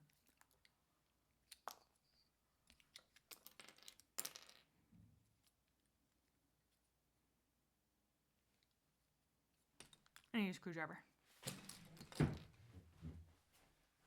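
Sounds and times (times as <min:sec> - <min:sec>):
plastic cube pieces clicking: 0:02.6 - 0:04.4.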